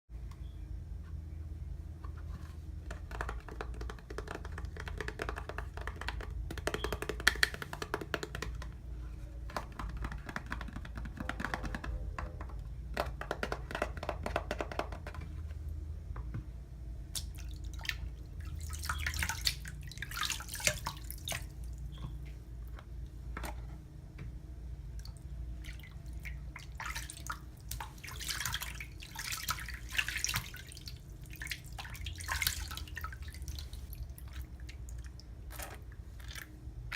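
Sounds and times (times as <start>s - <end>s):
soap lathering with water: 17.2s - 22.0s, 25.0s - 36.6s.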